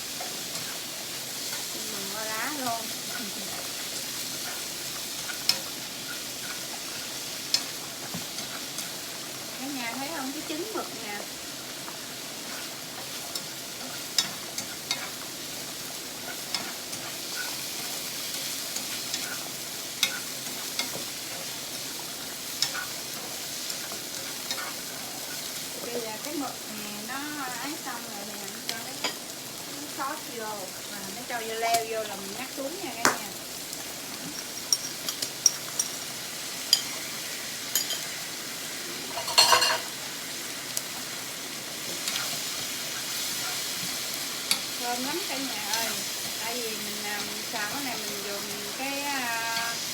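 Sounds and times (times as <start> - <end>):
squid sizzling in a pan: 0.0 - 49.9
utensil clicking against a pan: 16.2 - 25.6.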